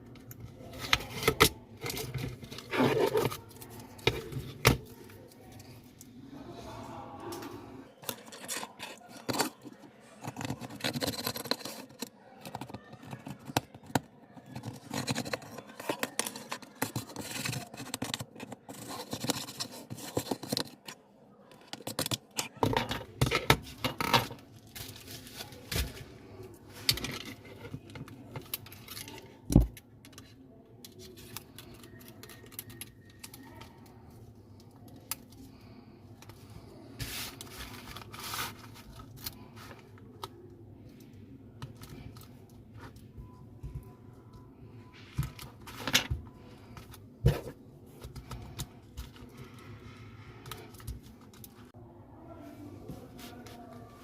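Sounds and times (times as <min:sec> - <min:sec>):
tools clicking and scraping on phone: 0:07.3 - 0:24.4, 0:26.7 - 0:51.8.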